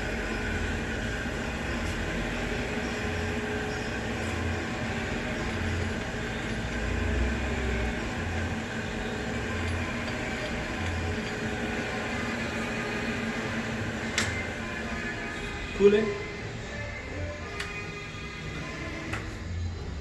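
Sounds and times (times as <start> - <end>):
lathe running: 0.0 - 19.9.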